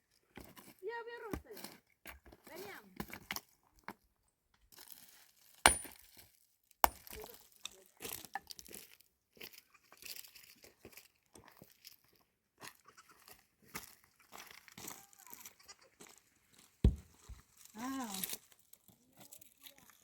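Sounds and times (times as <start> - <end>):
crunching and rustling: 17.0 - 20.0.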